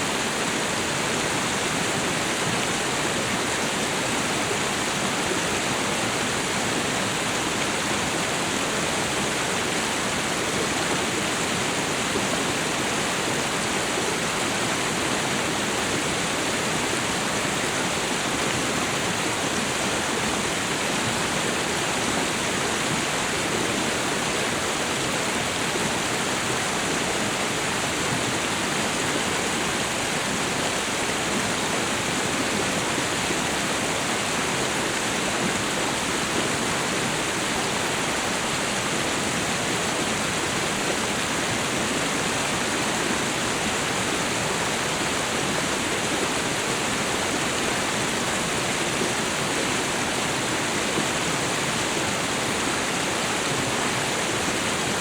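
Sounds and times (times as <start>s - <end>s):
waterfall and river rushing: 0.0s - 55.0s.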